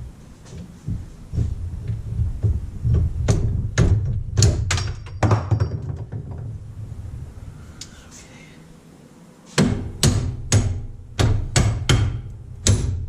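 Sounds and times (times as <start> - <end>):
dashboard knocks and clunks: 0.5 - 6.5.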